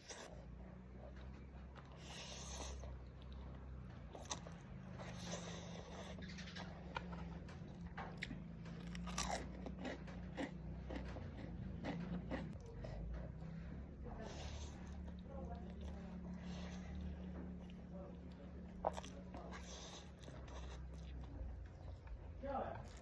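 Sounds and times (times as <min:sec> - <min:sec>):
person chewing crunchy food: 0:00.0 - 0:23.0
steady low hum: 0:00.0 - 0:23.0.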